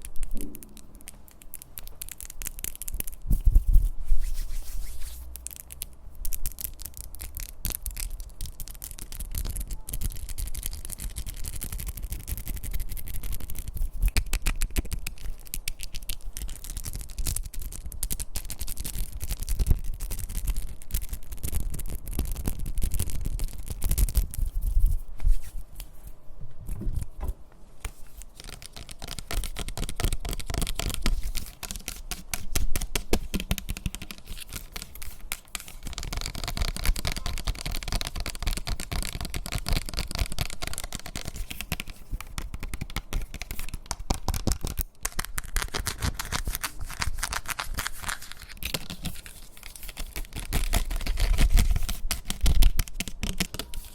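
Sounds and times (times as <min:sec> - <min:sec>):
quick taps and scratches on objects: 0:26.6 - 0:53.9.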